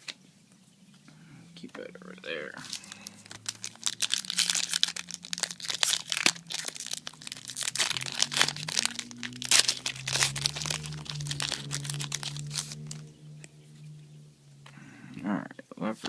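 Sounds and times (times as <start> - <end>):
foil wrapper crinkling and tearing: 2.6 - 13.1.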